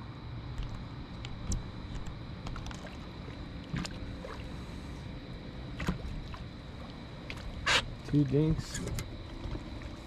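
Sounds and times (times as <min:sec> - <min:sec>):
wind: 0:00.0 - 0:10.0
river water rumbling: 0:02.4 - 0:10.0.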